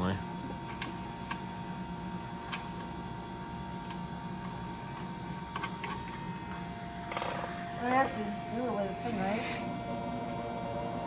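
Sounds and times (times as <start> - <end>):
electrical hum: 0.0 - 11.0.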